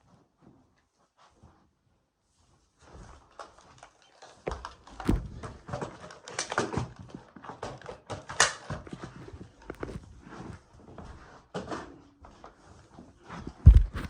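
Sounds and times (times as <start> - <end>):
clicks and rustles of handling: 2.9 - 10.6, 11.3 - 14.0.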